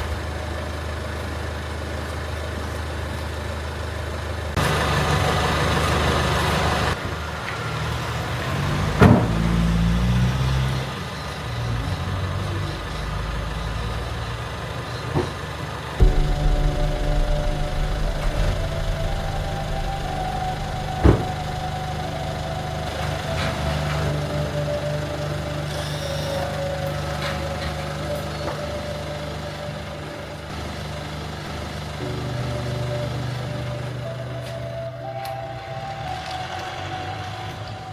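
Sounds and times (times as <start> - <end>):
vehicle engine droning: 4.2 - 37.9
sharp knock: 16.0 - 22.6.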